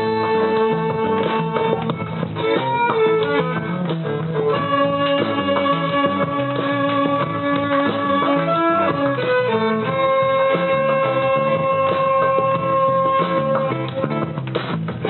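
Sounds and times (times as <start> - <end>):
band playing: 0.0 - 15.0
lead instrument holding long notes: 4.5 - 13.9.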